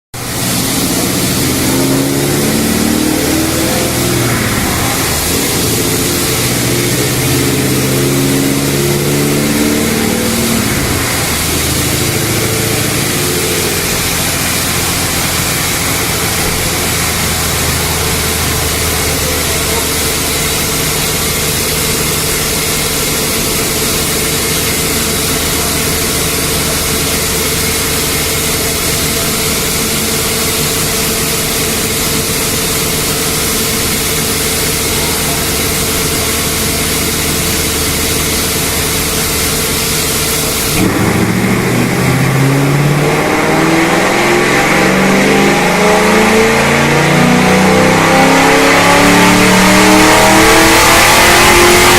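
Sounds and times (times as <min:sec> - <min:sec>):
car engine idling loudly: 0:00.1 - 0:51.9.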